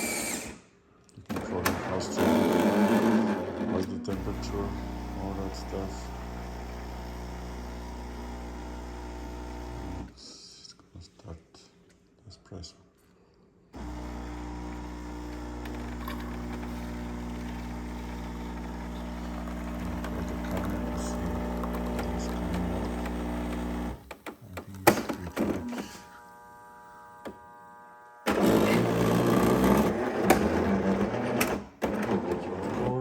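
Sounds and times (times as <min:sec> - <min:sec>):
espresso machine humming: 0:04.1 - 0:10.1, 0:13.8 - 0:24.1, 0:25.6 - 0:30.0
espresso pump rattling buzz: 0:04.1 - 0:10.1, 0:13.8 - 0:24.1, 0:25.8 - 0:30.4.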